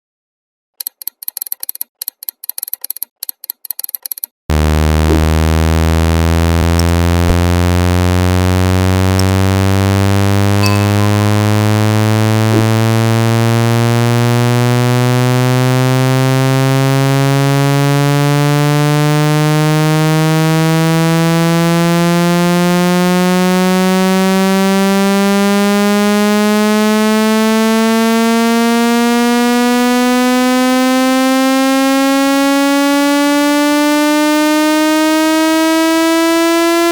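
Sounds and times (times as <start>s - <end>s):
rapid clicks: 0.8s - 4.4s, 9.0s - 9.6s
rising buzzy sweep tone: 4.5s - 36.9s.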